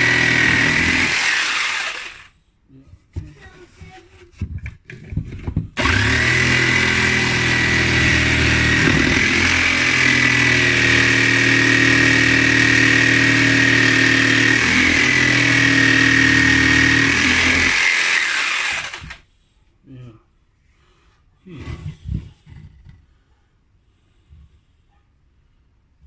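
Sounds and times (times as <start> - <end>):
power tool cutting wood: 0.0 - 2.3, 5.8 - 19.2.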